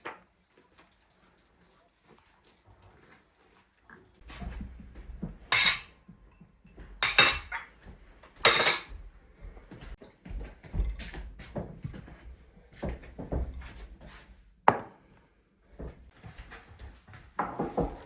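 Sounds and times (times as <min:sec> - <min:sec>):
dishes and cutlery clattering: 0:05.0 - 0:07.8, 0:08.4 - 0:09.0.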